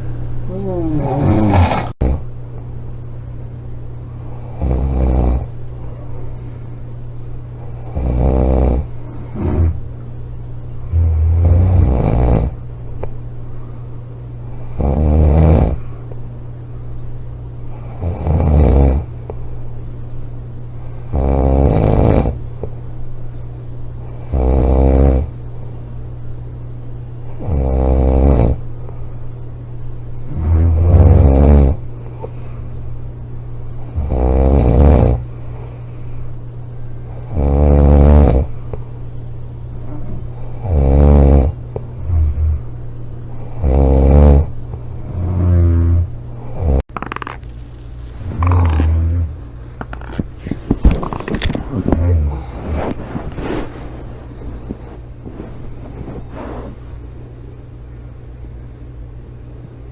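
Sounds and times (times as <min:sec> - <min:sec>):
steady low hum: 0:00.0 - 0:59.9
person snoring loudly: 0:00.5 - 0:02.2, 0:07.8 - 0:09.8, 0:10.9 - 0:12.6, 0:14.7 - 0:15.8, 0:17.9 - 0:19.1, 0:21.1 - 0:22.4, 0:30.3 - 0:31.8, 0:33.9 - 0:35.2, 0:37.3 - 0:38.5, 0:40.6 - 0:42.7, 0:43.4 - 0:44.5, 0:45.1 - 0:47.4, 0:48.2 - 0:49.4, 0:51.0 - 0:52.6
quiet breathing: 0:35.2 - 0:37.2, 0:51.4 - 0:57.0.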